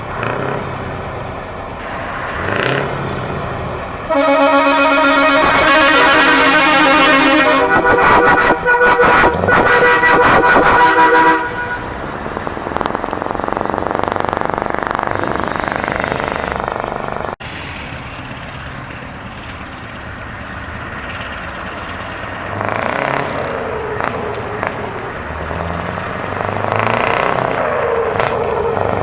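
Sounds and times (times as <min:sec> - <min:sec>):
heavy truck engine running: 0:00.0 - 0:29.0
multi-tone truck horn: 0:04.0 - 0:12.3.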